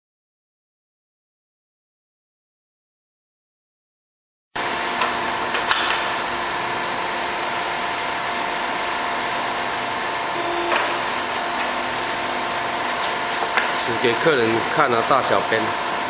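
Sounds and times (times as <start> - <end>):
machine motor whine: 4.6 - 16.0.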